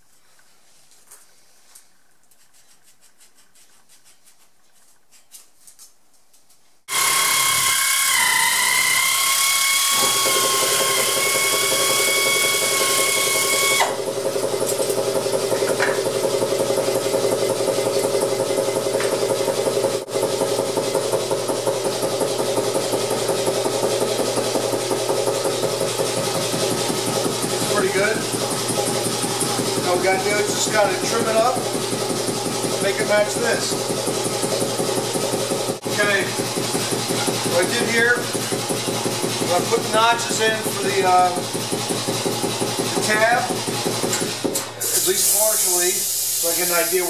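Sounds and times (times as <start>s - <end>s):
cutting tool cutting steel pipe: 6.9s - 14.0s
air-powered cutting tool whining: 6.9s - 47.0s.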